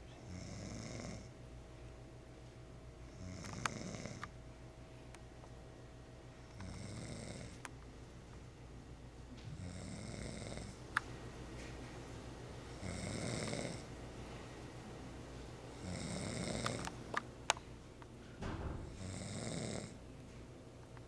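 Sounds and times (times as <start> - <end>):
snoring like a motorboat: 0.2 - 1.3, 12.8 - 13.9, 15.8 - 16.7.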